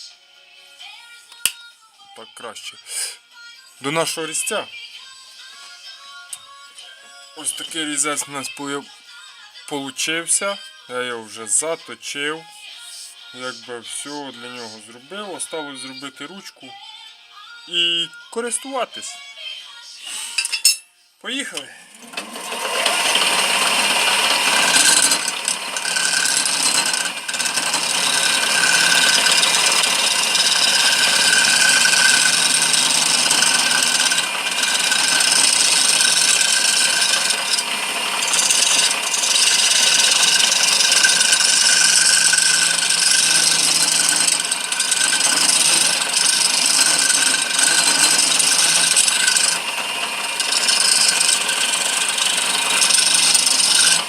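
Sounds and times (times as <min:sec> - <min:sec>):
lathe cutter shaving wood: 0:21.9 - 0:54.0
lathe motor hum: 0:21.9 - 0:54.0.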